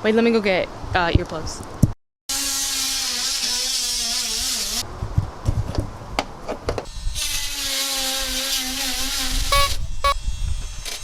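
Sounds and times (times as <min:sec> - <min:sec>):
power saw whining: 0:09.5 - 0:10.2.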